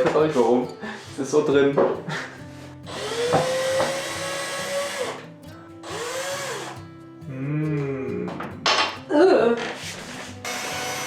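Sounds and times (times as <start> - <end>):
cordless drill motor spinning: 2.9 - 5.2, 5.8 - 6.8, 10.4 - 11.0.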